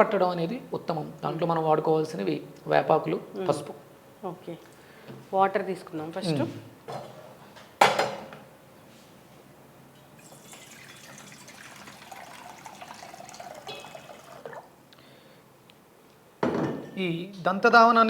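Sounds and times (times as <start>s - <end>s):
water pouring into vessel: 10.2s - 14.8s.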